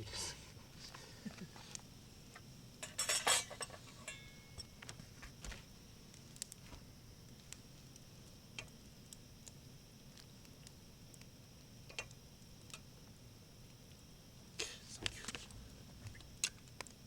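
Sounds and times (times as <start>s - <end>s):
utensils clinking against dishes: 2.8s - 4.7s.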